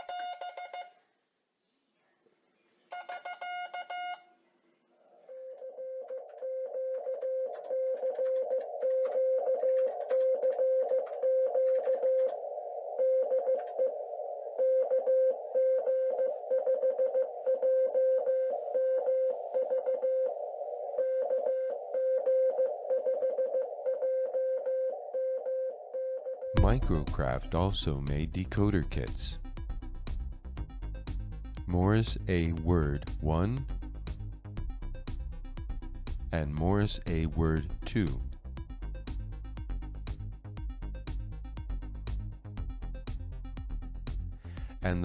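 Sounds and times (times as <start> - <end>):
morse code beeping tone: 23.2 - 29.9, 30.8 - 39.1, 44.6 - 45.0.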